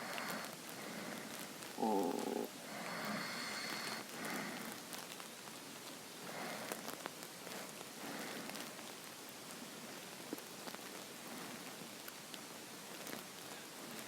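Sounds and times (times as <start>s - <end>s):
stomach growling gurgle: 0.0s - 5.1s, 6.2s - 9.0s
soft breathing: 0.0s - 5.2s, 6.2s - 8.9s, 10.9s - 12.0s
steady hiss: 0.0s - 14.0s.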